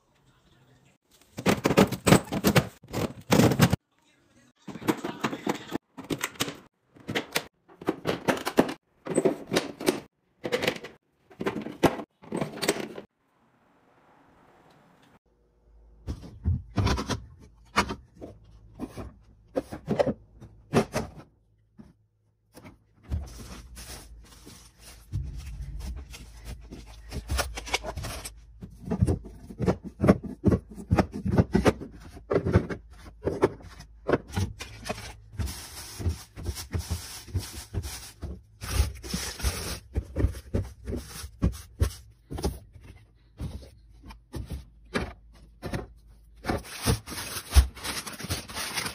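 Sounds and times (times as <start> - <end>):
rustling and scraping: 18.1 - 48.9.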